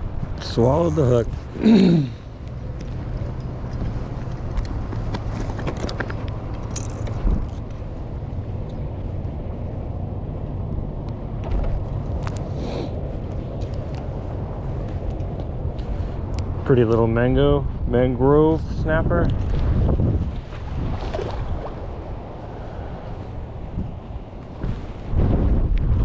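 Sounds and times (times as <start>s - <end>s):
handling clicks and rustles: 2.4s - 9.4s.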